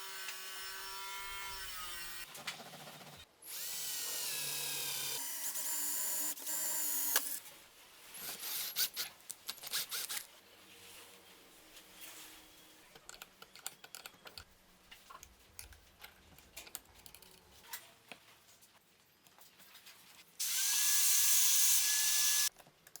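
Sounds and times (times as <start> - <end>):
tools and wood clicking: 12.9 - 18.2, 22.5 - 23.0
power tool high whine: 20.4 - 22.5.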